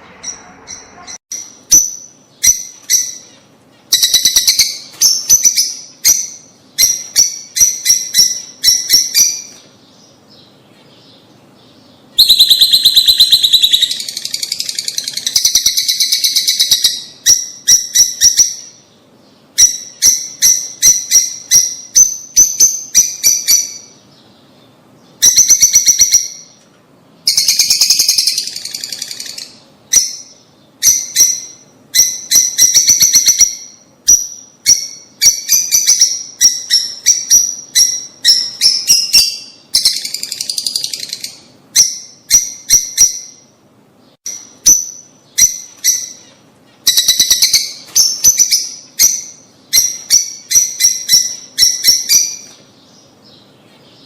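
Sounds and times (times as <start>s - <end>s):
lovebirds chirping: 0.0s - 54.0s.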